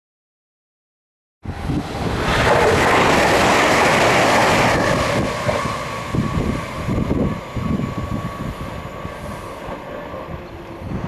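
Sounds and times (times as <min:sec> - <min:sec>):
train passing at speed: 0:01.4 - 0:11.0.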